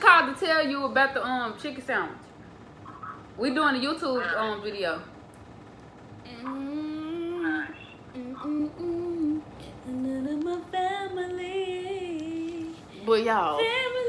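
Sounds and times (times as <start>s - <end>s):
woman singing slow melody: 6.2s - 14.0s.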